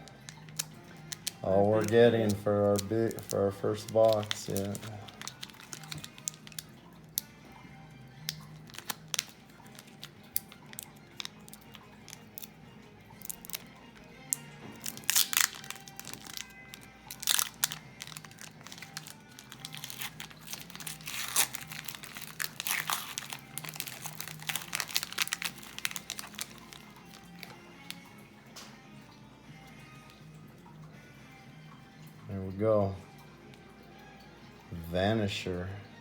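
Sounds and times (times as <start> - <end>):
wrapper crinkling and tearing: 0.0 - 7.3, 8.1 - 28.0
quiet background music: 0.0 - 36.0.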